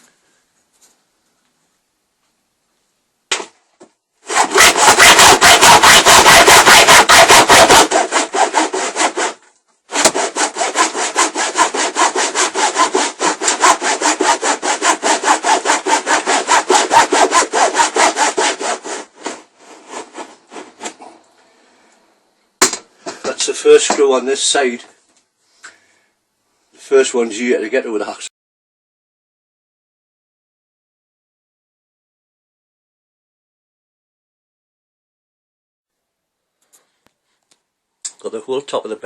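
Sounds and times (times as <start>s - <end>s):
hacksaw sawing: 4.2s - 21.0s.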